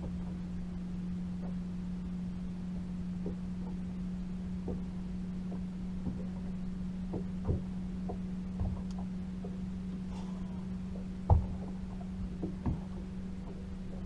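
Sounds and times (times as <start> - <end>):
boat motor humming: 0.0 - 14.0.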